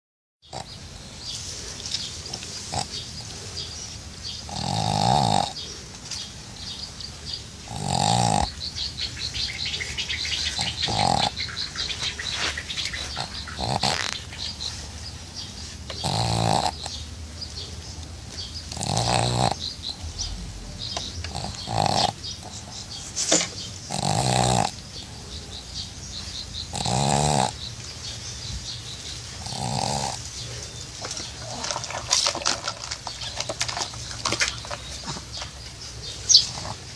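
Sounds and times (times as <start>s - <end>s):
dog snoring: 2.2s - 3.0s, 4.3s - 5.8s, 7.6s - 14.6s, 15.9s - 17.0s, 18.6s - 22.9s, 23.9s - 24.8s, 26.7s - 27.6s, 29.4s - 32.4s.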